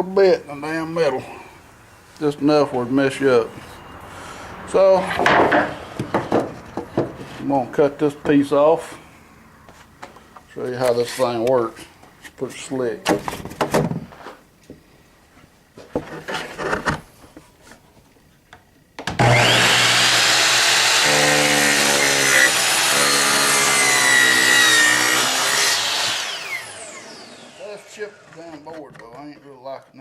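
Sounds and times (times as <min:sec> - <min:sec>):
miter saw cutting wood: 0:19.1 - 0:28.5.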